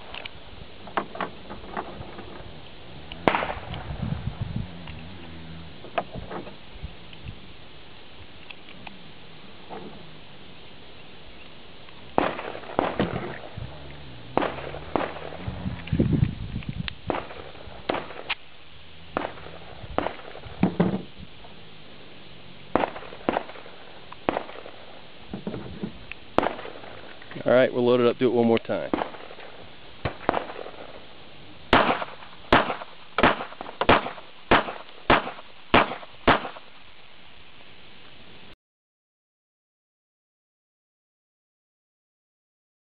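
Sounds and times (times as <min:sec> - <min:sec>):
pistol shots: 0:03.1 - 0:03.9, 0:12.1 - 0:13.6, 0:14.2 - 0:15.5, 0:17.1 - 0:18.4, 0:19.1 - 0:20.7, 0:22.7 - 0:25.0, 0:26.4 - 0:27.2, 0:28.9 - 0:31.0, 0:31.7 - 0:36.7.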